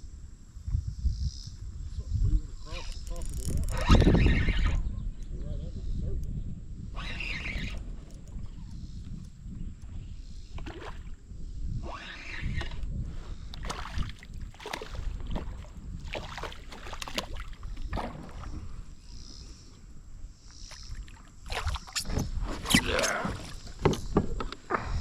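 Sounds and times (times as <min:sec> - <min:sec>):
water moving against kayak hull: 0:11.8 - 0:19.0, 0:20.7 - 0:25.0.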